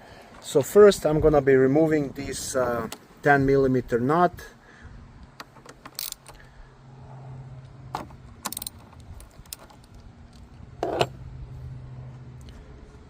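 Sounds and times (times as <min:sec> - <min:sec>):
wrench clicking on metal nut: 0:05.4 - 0:06.4, 0:08.4 - 0:10.0.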